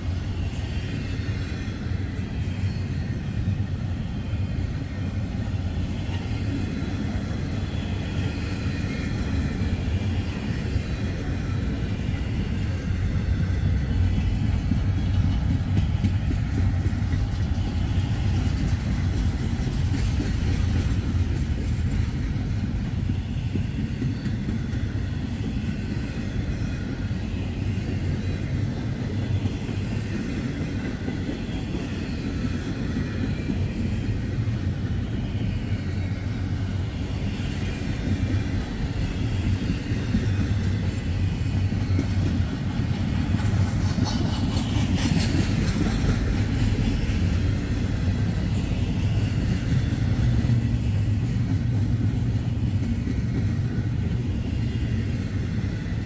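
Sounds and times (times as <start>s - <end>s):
freight train rumbling past: 0.0s - 56.0s.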